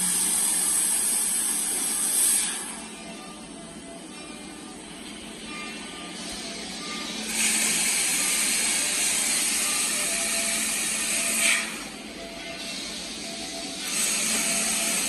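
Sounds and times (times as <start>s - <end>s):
welding arc hissing: 0.0s - 2.8s, 7.1s - 11.9s, 13.8s - 15.0s.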